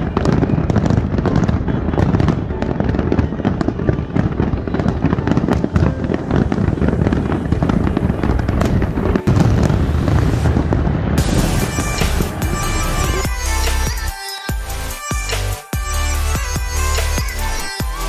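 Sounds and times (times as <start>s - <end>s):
fireworks bangs and crackles: 0.0s - 18.0s
electronic music: 11.1s - 18.0s.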